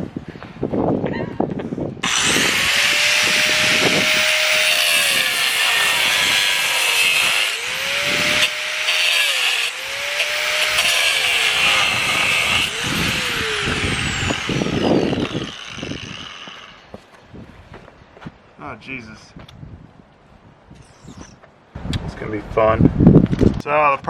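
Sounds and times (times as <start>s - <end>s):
grinder disc winding down: 2.0s - 16.8s
angle grinder cutting steel: 2.0s - 16.9s.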